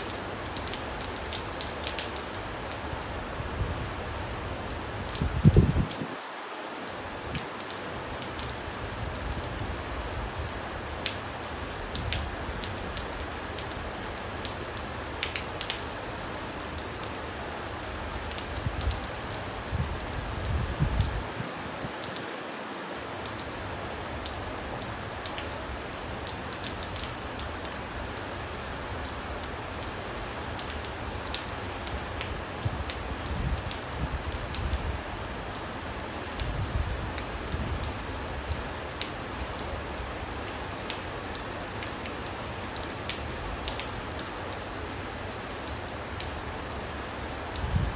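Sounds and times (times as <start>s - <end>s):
steady rain hissing: 0.0s - 47.9s.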